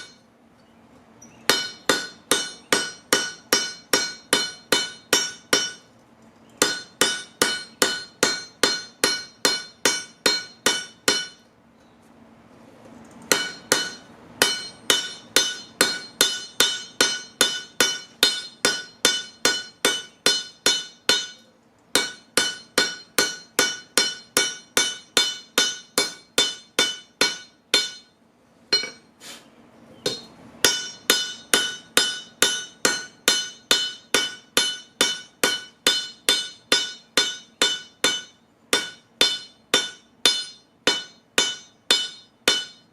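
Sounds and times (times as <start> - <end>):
hammer striking metal anvil: 0.0 - 0.3, 1.4 - 5.9, 6.6 - 11.5, 13.3 - 29.1, 30.0 - 42.9.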